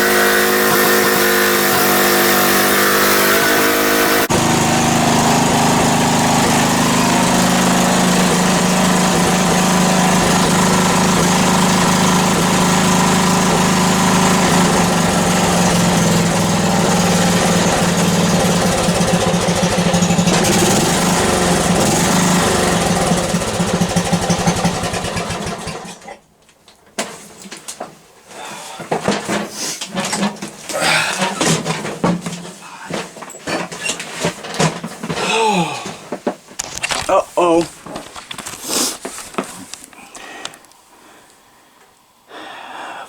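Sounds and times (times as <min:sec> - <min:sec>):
lawn mower engine running: 0:00.0 - 0:26.1.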